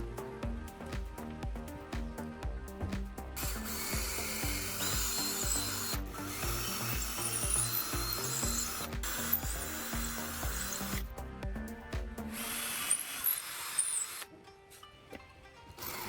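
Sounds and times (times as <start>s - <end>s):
background music with beat: 0.0s - 13.1s, 14.4s - 16.0s
power tool running: 3.4s - 11.2s, 12.3s - 14.3s, 15.8s - 16.0s.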